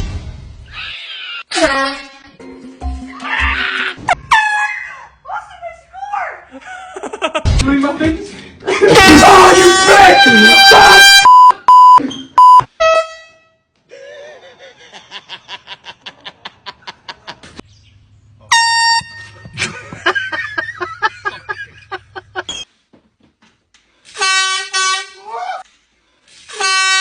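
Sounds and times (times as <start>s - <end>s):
air horn blasts: 9.0s - 11.5s, 12.7s - 13.7s, 18.5s - 19.5s, 24.1s - 25.3s, 26.5s - 27.0s.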